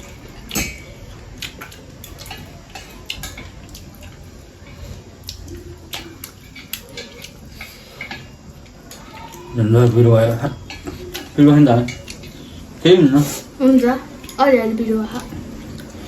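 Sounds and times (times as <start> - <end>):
utensils clicking against a dish: 0.3 - 12.6.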